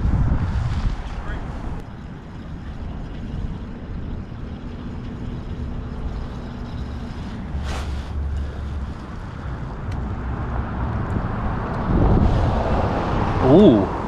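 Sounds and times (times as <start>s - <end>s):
wind buffeting microphone: 0.0s - 14.0s
hissing swish: 6.8s - 9.6s.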